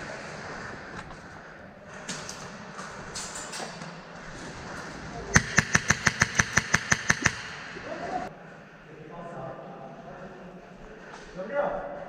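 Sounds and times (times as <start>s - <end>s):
airsoft gun shots: 5.4s - 7.9s.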